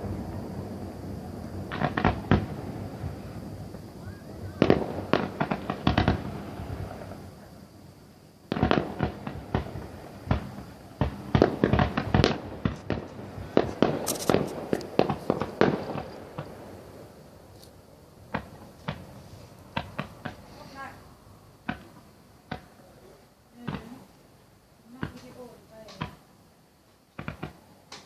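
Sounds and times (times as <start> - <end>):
fireworks bangs and cracks: 0.0 - 7.5, 8.4 - 17.0, 18.2 - 20.9, 21.6 - 22.9, 23.6 - 24.0, 27.1 - 27.6.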